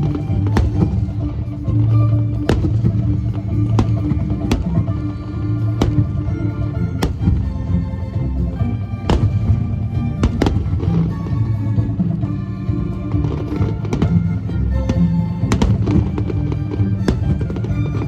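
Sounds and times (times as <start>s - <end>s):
string orchestra music: 0.0s - 18.0s
fireworks bangs: 5.8s - 6.3s, 6.9s - 7.4s, 9.1s - 9.6s.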